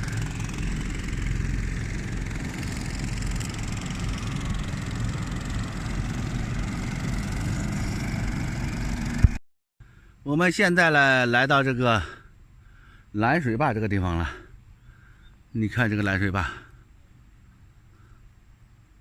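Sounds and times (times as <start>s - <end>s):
boat engines droning: 0.0s - 9.4s.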